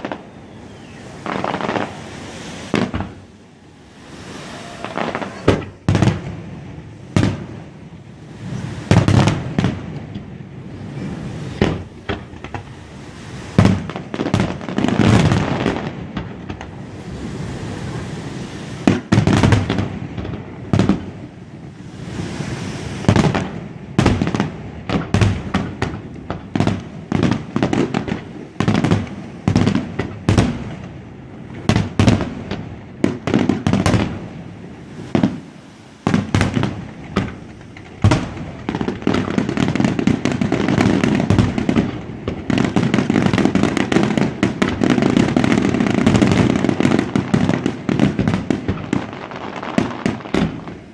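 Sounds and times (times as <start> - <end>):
fireworks crackle and rumble: 0.0 - 50.9.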